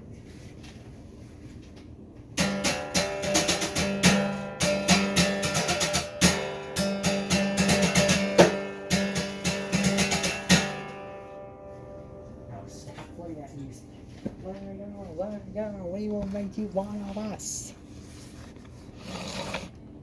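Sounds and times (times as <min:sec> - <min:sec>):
strummed guitar chords: 0:02.4 - 0:14.2.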